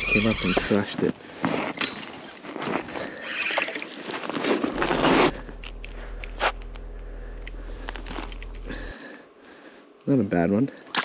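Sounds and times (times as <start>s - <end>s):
steady low hum: 4.5s - 10.3s
scattered clicks: 5.4s - 8.9s.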